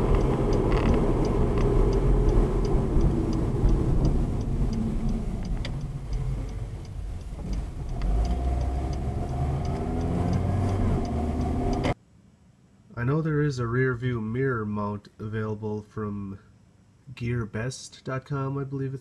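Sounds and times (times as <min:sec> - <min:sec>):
car engine and road rumble: 0:00.0 - 0:12.0
light even ticking: 0:00.0 - 0:12.0.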